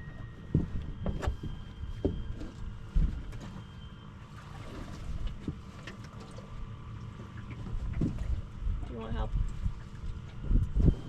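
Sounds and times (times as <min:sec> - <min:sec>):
wind buffeting microphone: 0:07.8 - 0:11.0.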